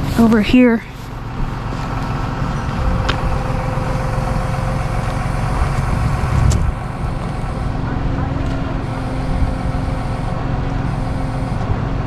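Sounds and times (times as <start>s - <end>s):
truck engine idling: 0.0s - 12.0s.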